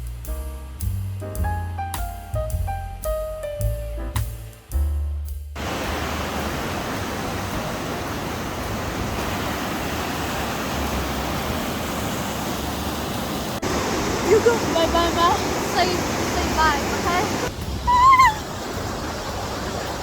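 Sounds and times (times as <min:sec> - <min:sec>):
background music: 0:00.0 - 0:05.4
rushing water roar: 0:05.6 - 0:20.0.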